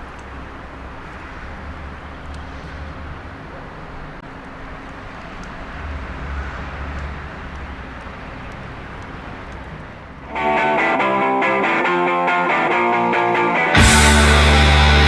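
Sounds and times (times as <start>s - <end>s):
road traffic rumble and hiss: 0.0s - 12.9s
vehicle passing: 0.3s - 15.0s
loud rock music with electric guitar: 10.3s - 15.0s.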